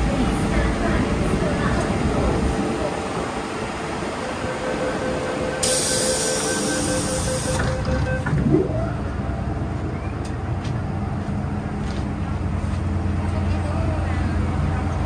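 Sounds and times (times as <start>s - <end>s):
train rumbling and humming: 0.0s - 15.0s
short rising whine: 5.4s - 10.3s.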